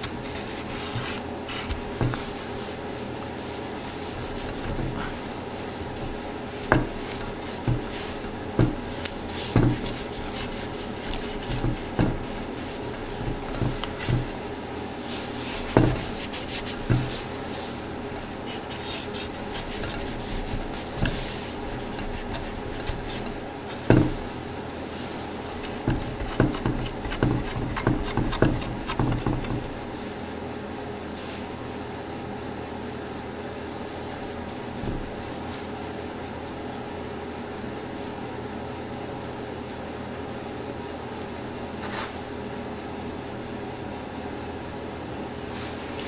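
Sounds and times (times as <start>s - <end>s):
scrubbing on metal heatsink: 0.0s - 29.8s.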